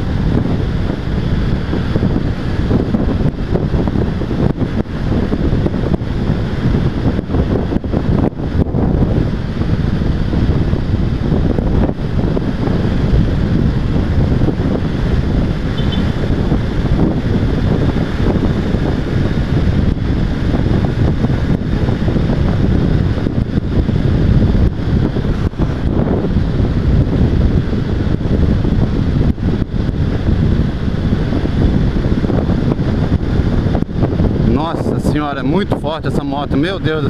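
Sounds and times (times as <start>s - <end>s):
motorcycle engine: 0.0s - 34.4s
wind rushing over microphone: 0.0s - 37.0s.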